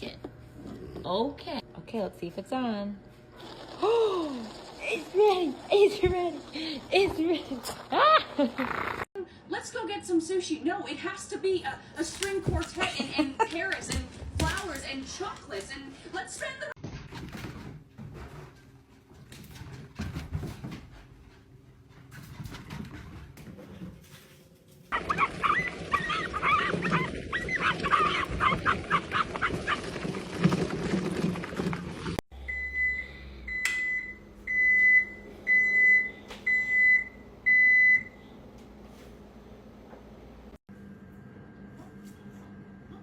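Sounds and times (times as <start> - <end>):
dog yipping and whining: 24.9 - 29.8.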